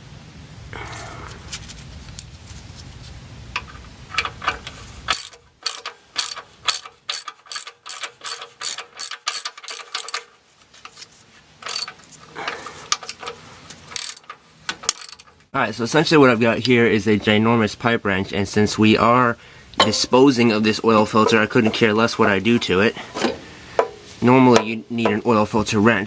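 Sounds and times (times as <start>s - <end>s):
socket ratchet clicking: 5.1s - 10.3s, 11.6s - 12.0s, 13.9s - 15.3s.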